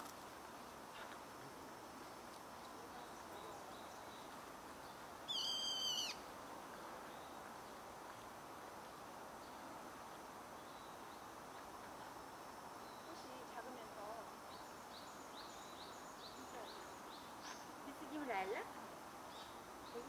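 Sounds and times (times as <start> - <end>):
faint background noise: 0.0 - 20.0
bird call: 5.3 - 6.2.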